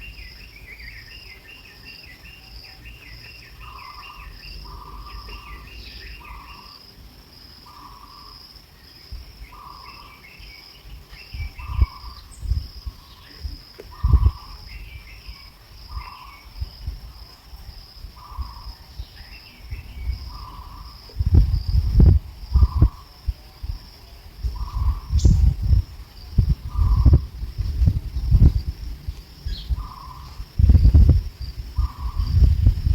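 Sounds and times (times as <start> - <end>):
bird chirps: 0.0 - 6.8, 7.6 - 16.7, 18.2 - 21.4, 24.4 - 28.7, 29.4 - 31.2
insects trilling: 0.0 - 32.9
low thumps and knocks: 11.4 - 14.5, 21.1 - 23.8, 24.4 - 32.9.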